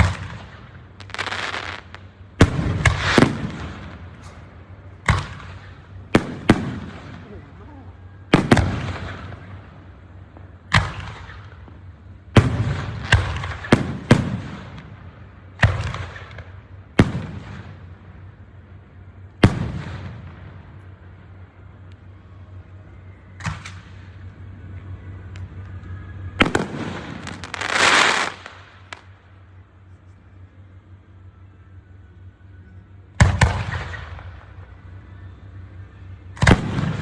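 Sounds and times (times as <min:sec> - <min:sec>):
fireworks booming: 0:00.0 - 0:18.4, 0:19.3 - 0:20.9, 0:26.4 - 0:29.2, 0:36.4 - 0:37.0
hissing crackling firework burst: 0:26.5 - 0:29.0.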